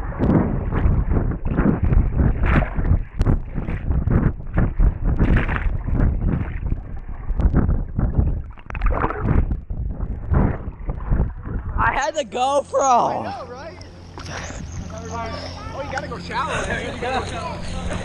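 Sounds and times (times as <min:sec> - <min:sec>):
muffled water sloshing and splashing: 0:00.0 - 0:12.0
wind buffeting microphone: 0:00.0 - 0:18.0.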